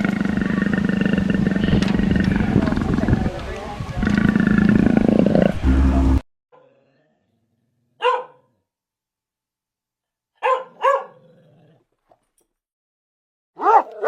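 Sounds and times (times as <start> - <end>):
dog barking: 8.0 - 8.5, 10.4 - 11.2, 13.6 - 14.0.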